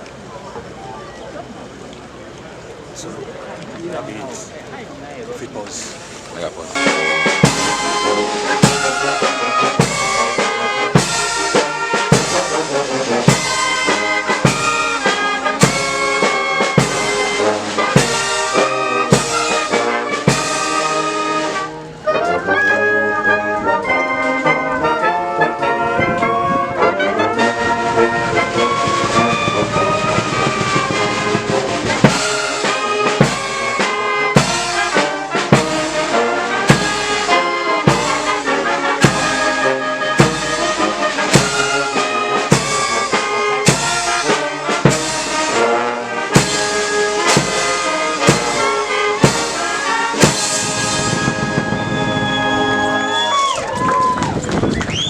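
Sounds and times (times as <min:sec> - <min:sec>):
brass band playing: 0:06.7 - 0:53.6
steady drum beat: 0:06.8 - 0:21.6, 0:28.3 - 0:52.6.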